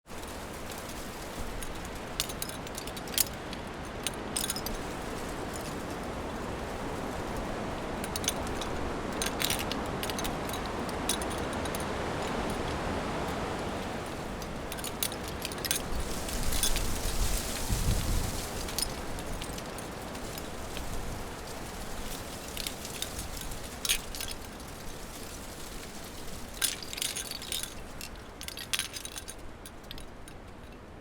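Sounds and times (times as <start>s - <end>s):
wind chimes tinkling: 4.4s - 6.5s, 7.9s - 12.9s, 13.7s - 30.1s.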